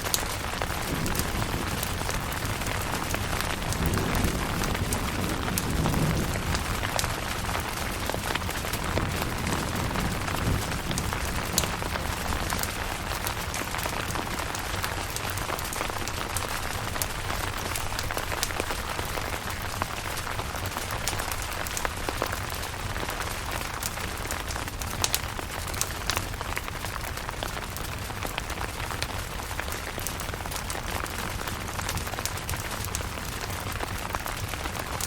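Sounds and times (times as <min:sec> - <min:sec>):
rain on a tent: 0:00.0 - 0:35.0
low thunder rumble: 0:00.1 - 0:24.2.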